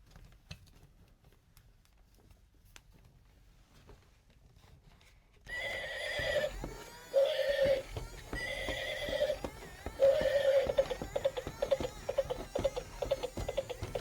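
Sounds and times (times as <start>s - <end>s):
electronic hoofbeats clip-clopping: 5.5s - 14.0s
held electronic tones: 5.5s - 14.0s
toy horse neighing: 5.5s - 14.0s.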